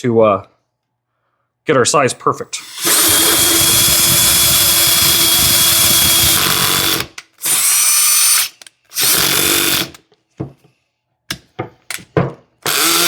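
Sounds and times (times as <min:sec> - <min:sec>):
electric drill boring: 0:02.6 - 0:10.0, 0:12.6 - 0:13.0.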